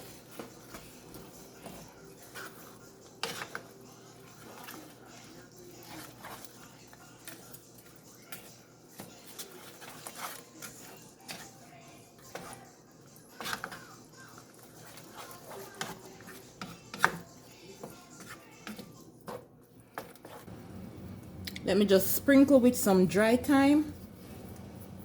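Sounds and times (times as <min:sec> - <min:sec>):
spoon knocking and scraping pot: 0:00.0 - 0:11.6, 0:12.2 - 0:20.5.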